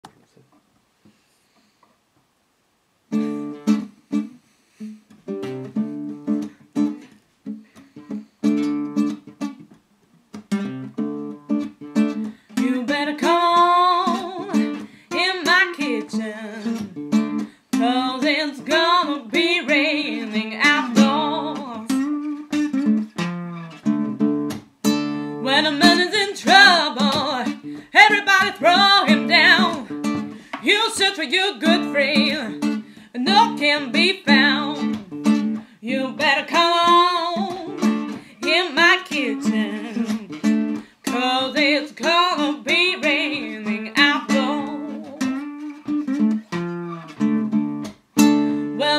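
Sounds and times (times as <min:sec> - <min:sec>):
acoustic guitar picking blues: 0:03.1 - 0:48.9
person singing: 0:12.6 - 0:17.0, 0:17.7 - 0:22.2, 0:25.4 - 0:35.0, 0:35.8 - 0:45.5.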